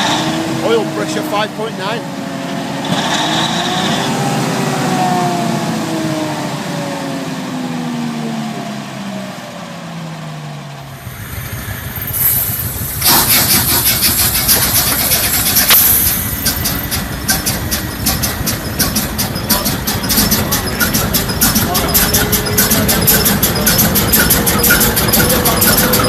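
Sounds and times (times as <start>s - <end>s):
large engine starting and running: 0.0s - 26.0s
loud rush of noise: 9.8s - 26.0s.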